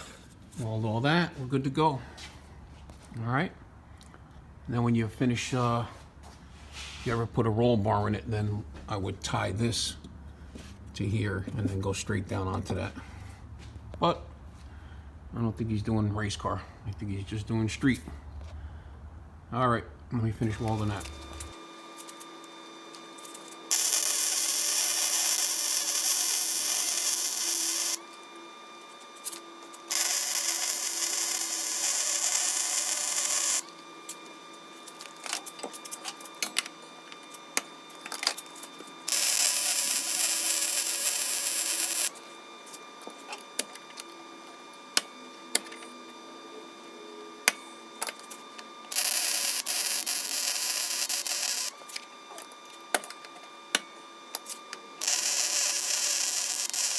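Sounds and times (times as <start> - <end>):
welding arc crackling: 23.0 - 28.1, 29.2 - 34.2, 37.3 - 43.2, 48.9 - 52.5, 54.4 - 56.9.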